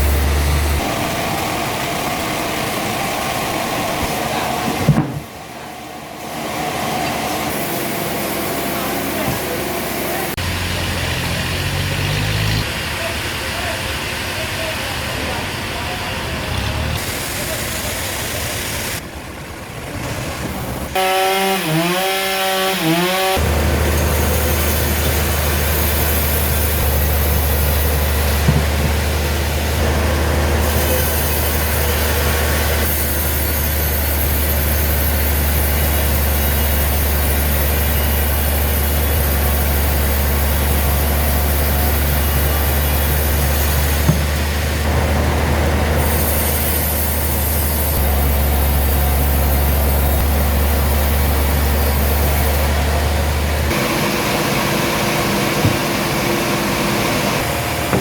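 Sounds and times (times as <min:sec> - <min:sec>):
sawmill machinery drone: 0:00.0 - 0:58.0
sharp knocks: 0:04.8 - 0:05.3, 0:28.4 - 0:29.0, 0:44.0 - 0:44.5, 0:55.6 - 0:56.2.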